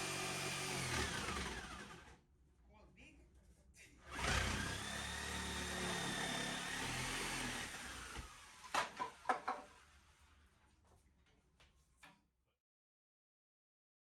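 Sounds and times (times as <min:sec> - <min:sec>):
power drill running: 0:00.0 - 0:02.1, 0:04.1 - 0:08.7.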